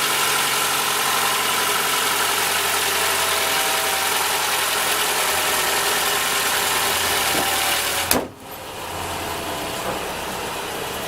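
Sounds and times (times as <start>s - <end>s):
car engine idling: 4.3s - 11.0s.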